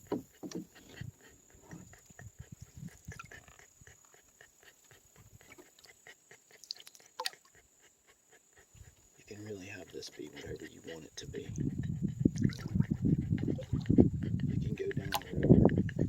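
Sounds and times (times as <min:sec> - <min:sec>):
small dog panting: 0:00.1 - 0:16.0.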